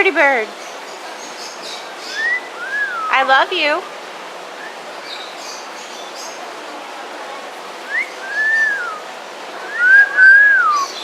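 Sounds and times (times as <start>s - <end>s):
bird whistling: 2.1s - 3.2s, 7.9s - 9.0s, 9.6s - 11.0s.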